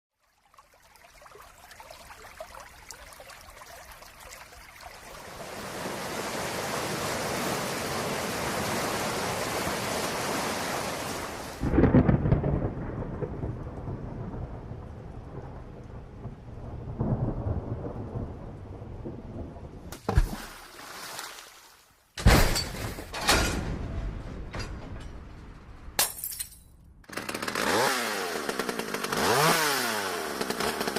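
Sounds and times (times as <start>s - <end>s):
rain: 0.1s - 22.1s
thunder rumbling: 11.6s - 19.9s
thunderclap: 11.6s - 20.0s, 23.2s - 26.0s.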